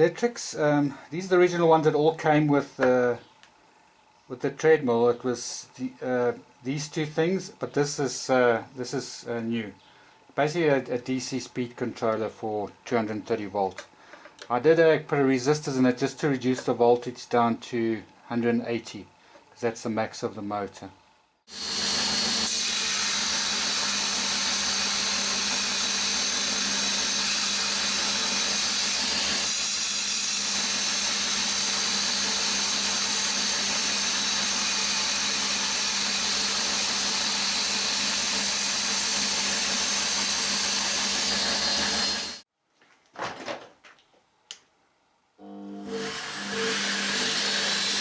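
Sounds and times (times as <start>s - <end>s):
belt grinder running: 21.5s - 42.4s, 45.4s - 48.0s.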